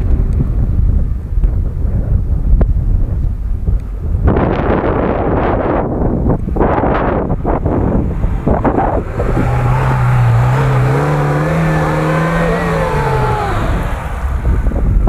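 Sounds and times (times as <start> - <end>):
wind buffeting microphone: 0.0 - 15.0
car engine revving hard: 7.7 - 14.8.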